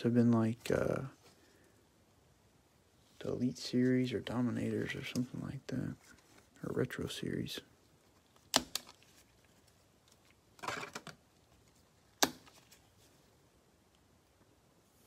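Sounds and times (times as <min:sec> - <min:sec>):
cards rustling: 0:07.9 - 0:13.2.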